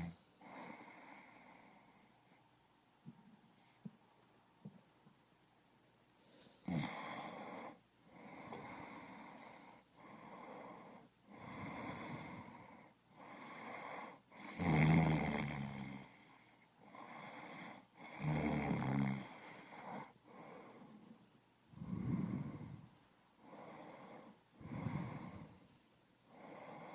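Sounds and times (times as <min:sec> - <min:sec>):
snoring buzz: 0:00.0 - 0:01.1, 0:06.6 - 0:09.7, 0:13.2 - 0:16.2, 0:18.0 - 0:20.1, 0:21.8 - 0:22.9, 0:23.6 - 0:25.6
heavy breathing: 0:06.2 - 0:14.6, 0:19.2 - 0:26.9.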